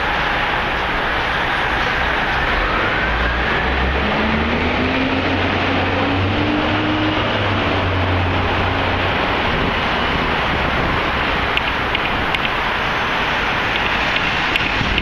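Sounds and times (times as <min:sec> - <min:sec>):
street traffic: 0:00.0 - 0:15.0
wind on microphone: 0:06.2 - 0:15.0
faint sharp clicks: 0:11.5 - 0:12.6.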